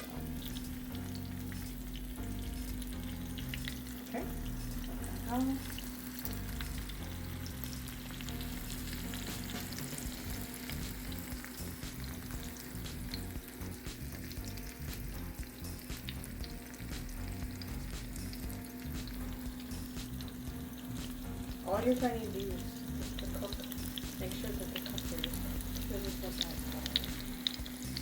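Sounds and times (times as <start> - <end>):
french toast sizzling in a pan: 0.0 - 28.0.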